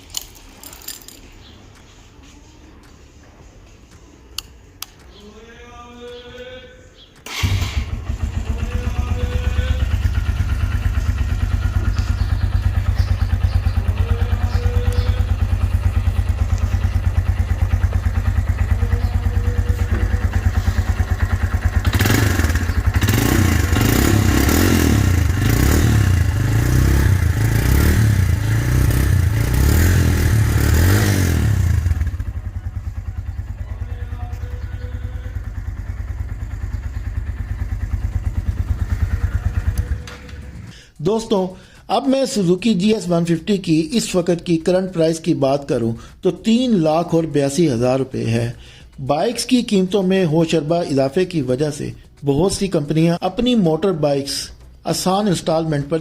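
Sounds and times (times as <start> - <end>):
motorcycle engine idling: 0.1 - 41.0
motorcycle engine revving: 7.2 - 40.8.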